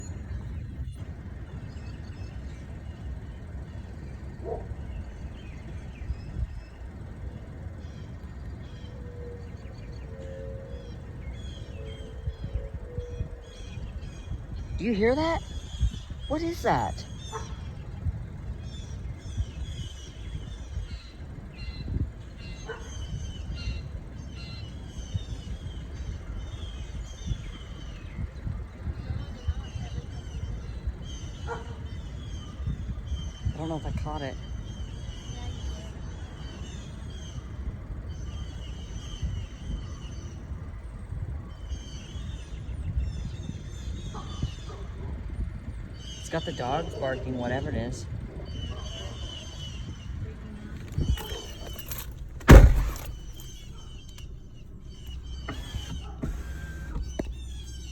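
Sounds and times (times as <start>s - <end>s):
steady low rumble: 0.0s - 14.8s
birds chirping: 0.0s - 57.9s.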